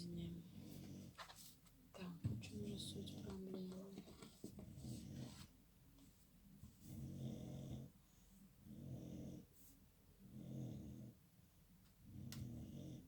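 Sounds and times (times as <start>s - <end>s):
pet snoring: 0.3s - 1.2s, 6.8s - 8.0s, 8.6s - 9.6s, 10.2s - 11.2s, 12.0s - 13.0s.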